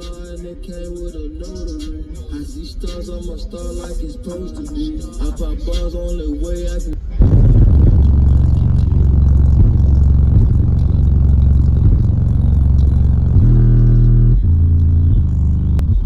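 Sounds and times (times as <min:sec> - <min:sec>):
subwoofer playing hip-hop bass: 0:00.0 - 0:16.0.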